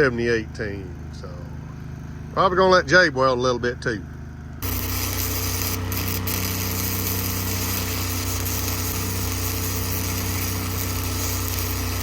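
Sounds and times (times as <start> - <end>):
welder engine humming: 4.6 - 12.0
welding arc crackling and hissing: 4.6 - 12.0.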